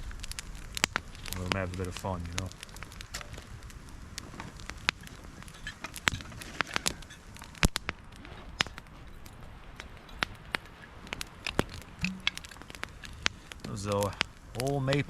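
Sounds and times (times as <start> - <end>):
campfire crackling and popping: 0.0 - 15.0.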